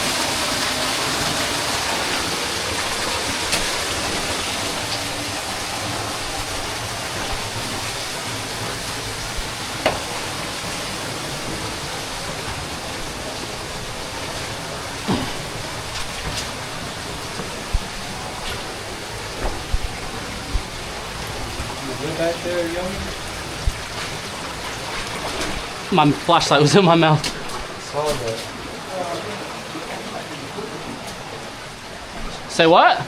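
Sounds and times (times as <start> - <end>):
flowing water rushing: 0.0 - 33.0
sharp knocks: 15.0 - 15.6.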